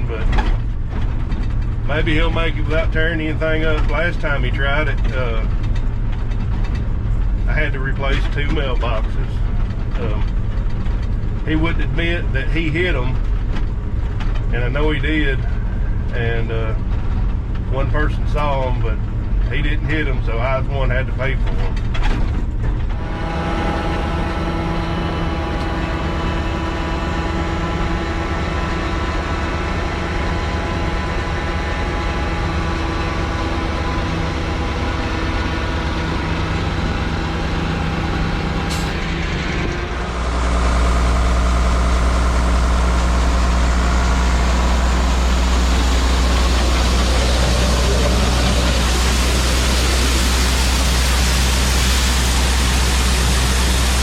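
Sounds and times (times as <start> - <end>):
truck engine running: 0.0 - 54.0
low drone with hiss: 14.5 - 17.0, 22.9 - 54.0.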